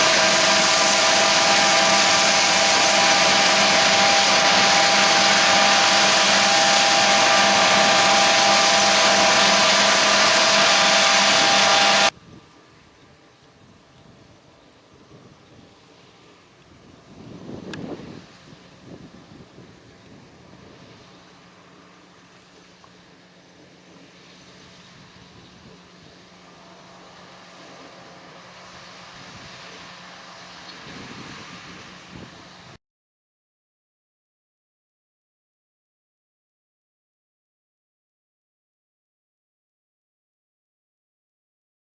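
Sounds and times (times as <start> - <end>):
farm machinery engine running: 0.0 - 12.2, 14.0 - 32.8
combine harvester whirring: 0.0 - 32.8.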